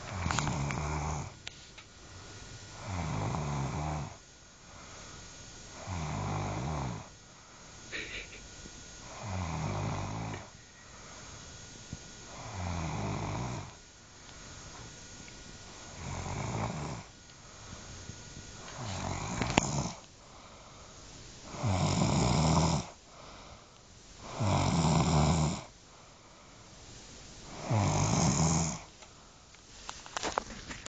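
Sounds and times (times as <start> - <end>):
person snoring: 0.0 - 1.4, 2.8 - 5.0, 5.7 - 7.1, 9.0 - 11.4, 12.3 - 13.8, 15.8 - 17.8, 18.6 - 23.6, 24.2 - 25.8, 27.4 - 28.9.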